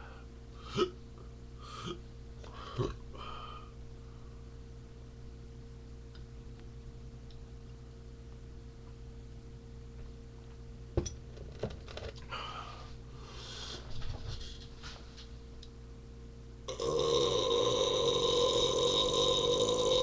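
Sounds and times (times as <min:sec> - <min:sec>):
long loud burp: 0:16.7 - 0:20.0.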